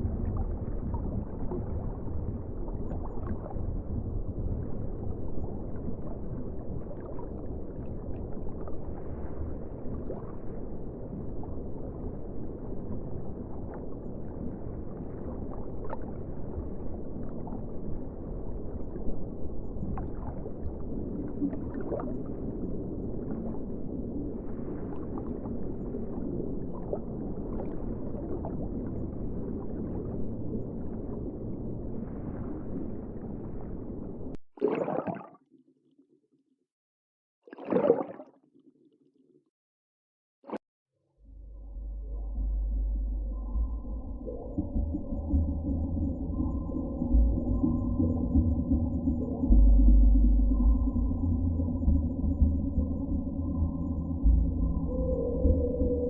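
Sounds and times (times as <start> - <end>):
muffled underwater water rush: 0.0 - 35.4, 37.4 - 39.0, 41.3 - 56.0.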